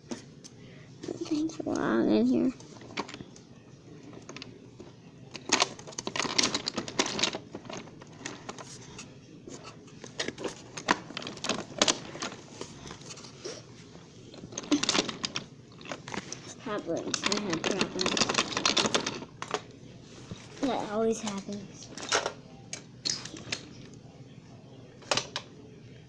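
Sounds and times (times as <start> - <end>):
toy trains clattering: 5.3 - 13.6, 14.4 - 19.7.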